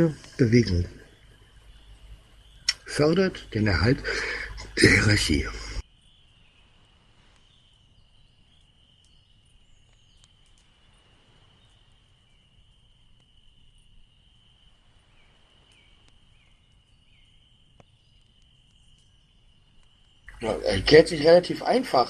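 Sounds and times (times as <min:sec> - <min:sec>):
faint click: 0:09.9 - 0:10.8.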